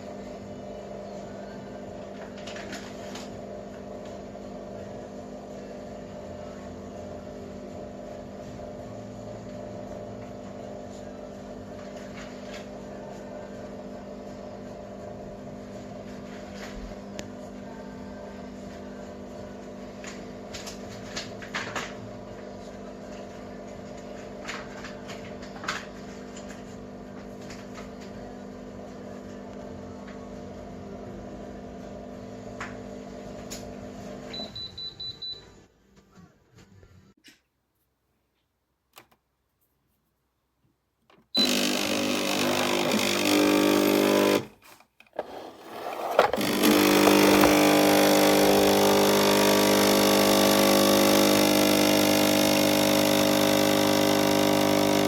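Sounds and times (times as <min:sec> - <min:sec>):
machine electrical hum: 0:41.4 - 0:44.5, 0:45.2 - 0:55.0.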